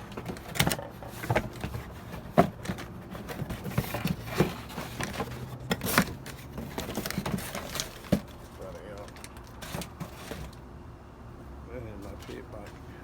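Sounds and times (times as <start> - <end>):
parts clicking and knocking: 0.0 - 10.6.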